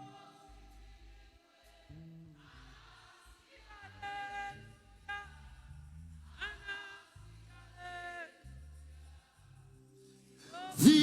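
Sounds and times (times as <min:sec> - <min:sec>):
faint sung notes: 0:00.0 - 0:01.2, 0:10.4 - 0:11.0
soft gospel worship music: 0:00.0 - 0:11.0.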